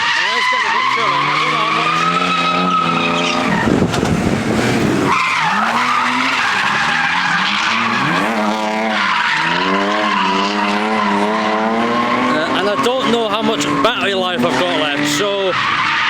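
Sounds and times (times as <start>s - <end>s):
car engine revving: 0.0s - 16.0s
tyres skidding: 0.0s - 16.0s.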